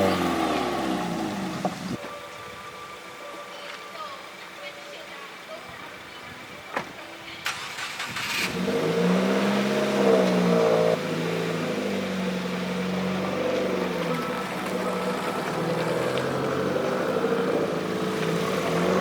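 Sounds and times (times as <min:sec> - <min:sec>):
car engine accelerating: 0:00.0 - 0:02.0, 0:07.5 - 0:19.0.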